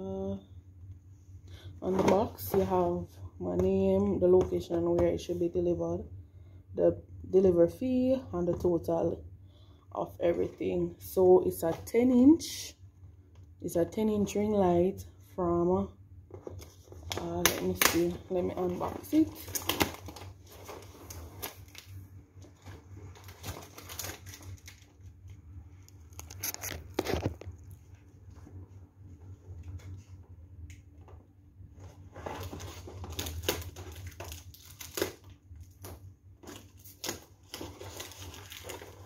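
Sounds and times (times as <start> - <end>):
packaging tearing and crinkling: 16.6 - 22.0, 22.6 - 25.1, 26.0 - 27.5, 32.1 - 39.0.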